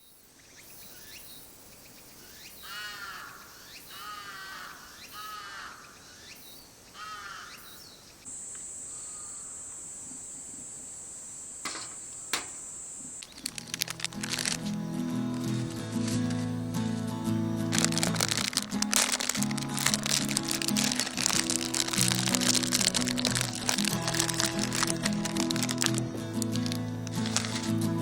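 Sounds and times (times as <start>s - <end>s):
crow cawing: 2.6s - 6.0s, 7.0s - 7.6s.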